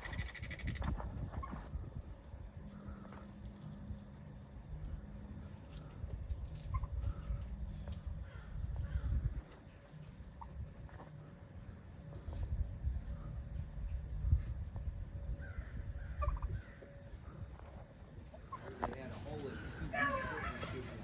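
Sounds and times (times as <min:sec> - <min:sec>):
faint bird calls: 0:05.5 - 0:11.4, 0:15.3 - 0:21.0.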